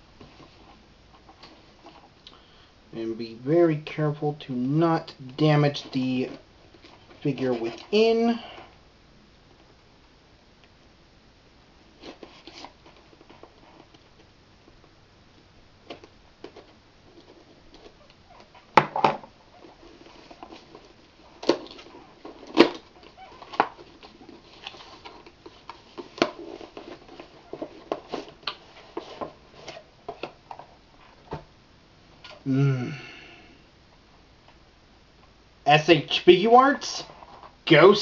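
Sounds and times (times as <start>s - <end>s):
cardboard and packaging rustling: 5.7s - 8.7s, 12.0s - 14.3s, 15.8s - 31.4s.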